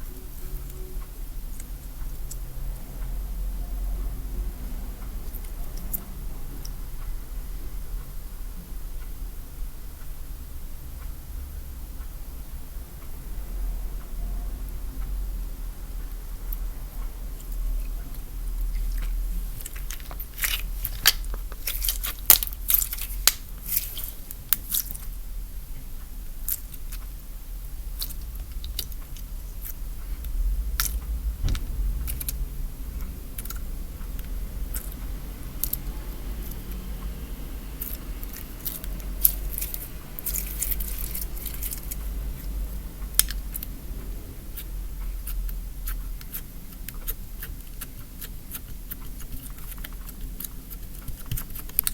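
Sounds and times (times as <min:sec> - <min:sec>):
low hum: 0:27.1 - 0:46.5.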